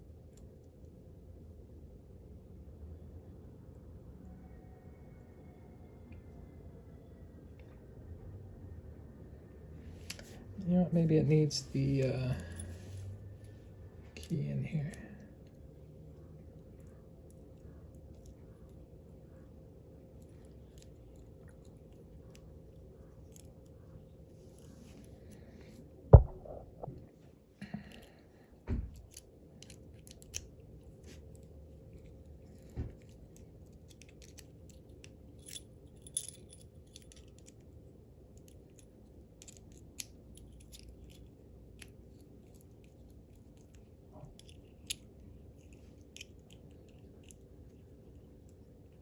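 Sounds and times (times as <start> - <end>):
heavy knock: 26.2 - 27.0
small metal clicks on padlock: 32.5 - 37.6, 38.3 - 47.4.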